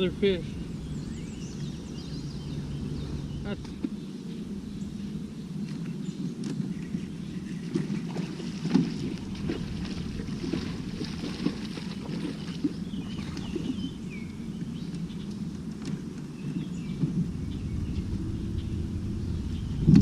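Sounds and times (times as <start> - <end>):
fishing boat engine rumble: 0.0 - 20.0
faint bird chirps: 9.0 - 15.5, 16.3 - 20.0.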